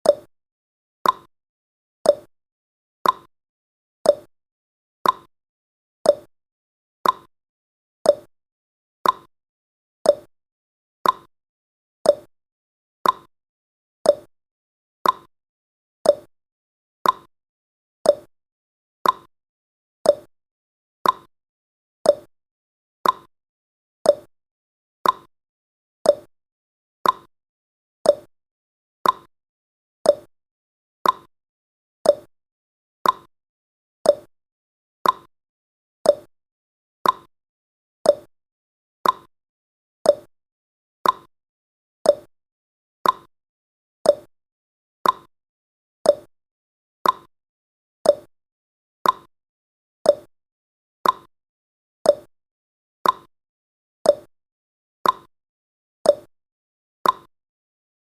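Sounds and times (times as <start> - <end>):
clock ticking: 33.0 - 33.3, 35.0 - 35.3, 37.0 - 37.3, 39.0 - 39.3, 41.0 - 41.3, 43.0 - 43.3, 45.0 - 45.3, 47.0 - 47.3.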